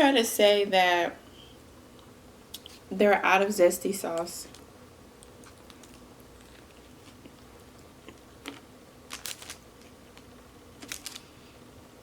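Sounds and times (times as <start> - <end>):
chewing: 5.2 - 11.2.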